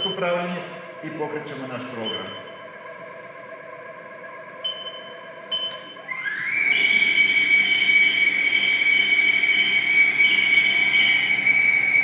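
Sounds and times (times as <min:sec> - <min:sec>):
lathe spindle whining: 0:06.0 - 0:12.0.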